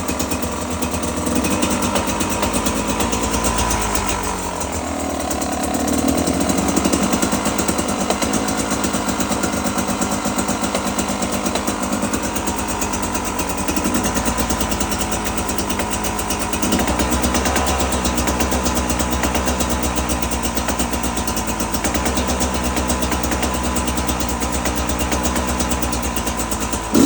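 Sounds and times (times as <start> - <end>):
engine knock: 0.0 - 27.0
two-stroke engine running: 0.0 - 27.0.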